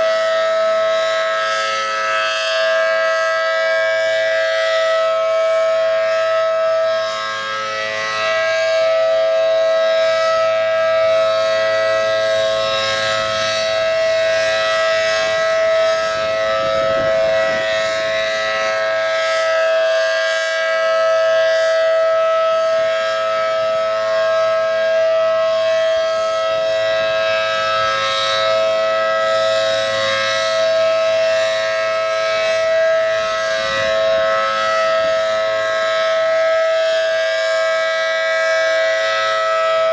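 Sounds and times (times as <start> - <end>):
tornado siren steady tone: 0.0 - 39.9.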